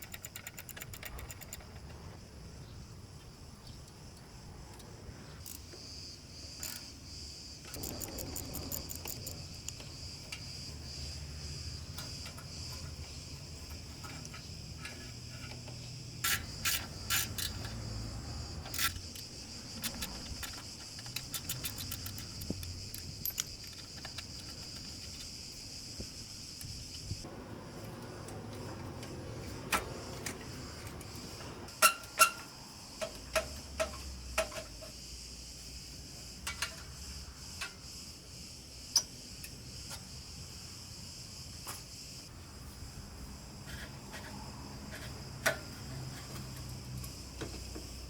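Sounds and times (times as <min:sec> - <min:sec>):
hand tools clicking on metal: 0:00.0 - 0:01.9, 0:07.7 - 0:09.8, 0:18.6 - 0:25.4
insect chirring: 0:05.4 - 0:27.3.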